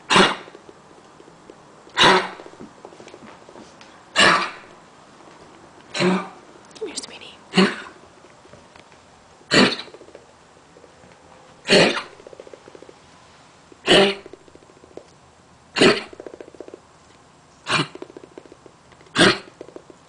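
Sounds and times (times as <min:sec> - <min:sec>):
dog coughing: 0:00.0 - 0:00.6, 0:01.9 - 0:02.4, 0:04.1 - 0:04.7, 0:05.9 - 0:06.4, 0:07.5 - 0:08.0, 0:09.5 - 0:10.0, 0:11.6 - 0:12.2, 0:13.8 - 0:14.4, 0:15.7 - 0:16.2, 0:17.6 - 0:18.0, 0:19.1 - 0:19.6.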